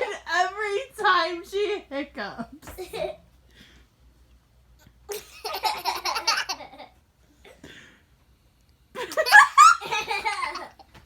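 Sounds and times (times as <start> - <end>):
girl giggling: 9.0 - 11.0.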